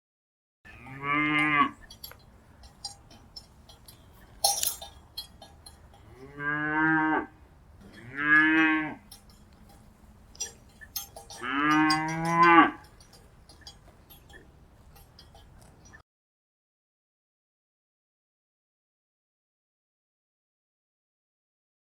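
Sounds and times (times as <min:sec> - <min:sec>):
cattle mooing: 0:00.7 - 0:02.2, 0:05.9 - 0:09.7, 0:10.4 - 0:14.5
light clinks: 0:01.4 - 0:06.4, 0:07.8 - 0:16.0.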